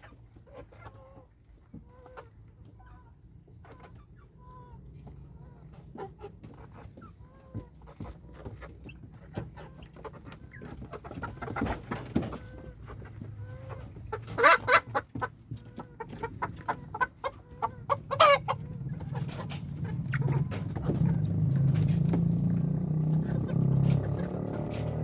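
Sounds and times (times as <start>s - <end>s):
chickens clucking: 0.0s - 25.0s
chicken squawking calls: 13.4s - 15.1s, 15.8s - 21.2s.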